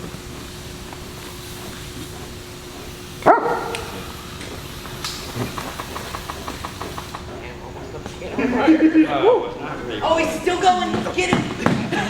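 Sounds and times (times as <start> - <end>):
dog barking: 3.2 - 4.1.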